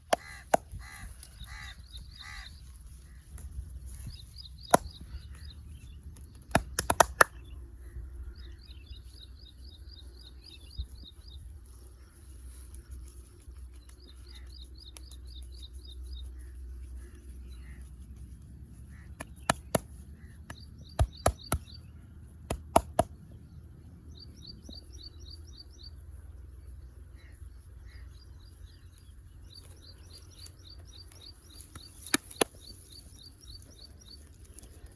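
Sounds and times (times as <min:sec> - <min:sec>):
low outdoor rumble: 0:00.0 - 0:34.9
hand slaps on skin: 0:06.5 - 0:07.4.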